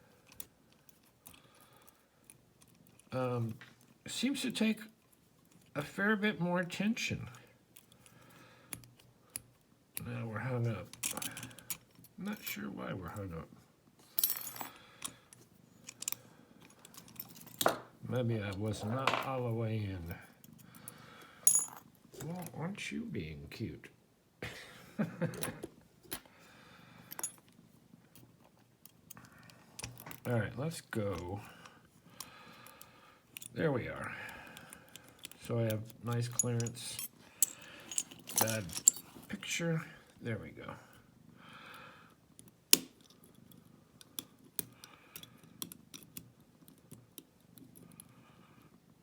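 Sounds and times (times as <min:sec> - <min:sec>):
lock picks clicking and scraping: 0:00.0 - 0:05.8, 0:07.2 - 0:13.2, 0:14.0 - 0:19.4, 0:20.1 - 0:22.5, 0:27.0 - 0:33.6, 0:34.3 - 0:39.4, 0:42.1 - 0:48.2
metallic clicks of lock picking: 0:32.6 - 0:33.6, 0:42.4 - 0:48.1.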